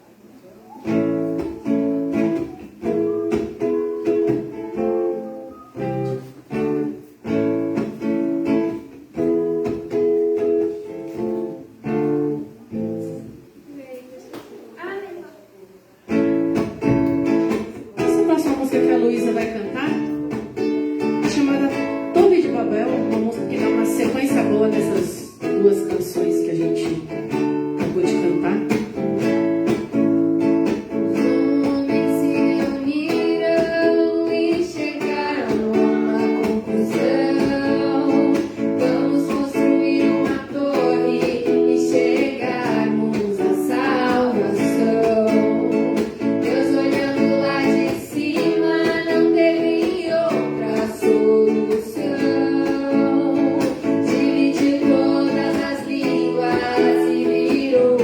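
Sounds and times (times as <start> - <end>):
guitar strumming chords: 16.1 - 58.0
person singing: 31.1 - 58.0.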